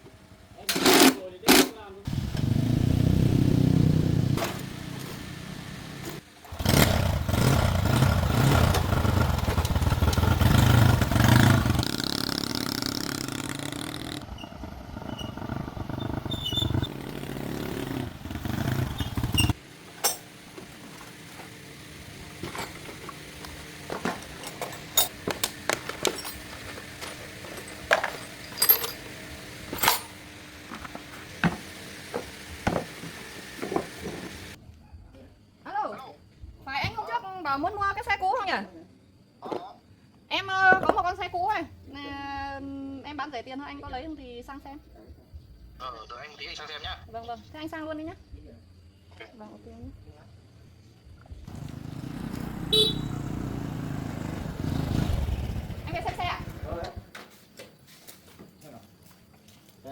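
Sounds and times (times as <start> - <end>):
motorbike engine revving: 0.6 - 34.6, 51.4 - 57.1.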